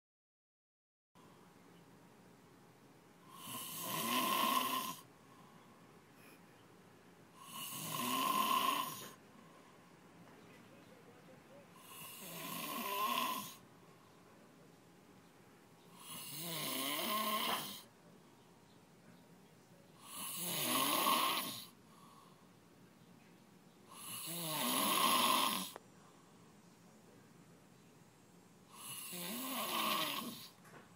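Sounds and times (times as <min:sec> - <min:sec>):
man snoring loudly: 0:03.3 - 0:05.1, 0:07.4 - 0:09.2, 0:11.8 - 0:13.6, 0:16.0 - 0:17.9, 0:20.0 - 0:21.8, 0:23.9 - 0:25.8, 0:28.7 - 0:30.6.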